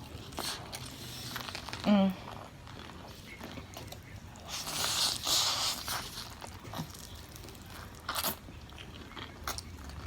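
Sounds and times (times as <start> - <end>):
noodles being slurped: 3.6 - 10.0.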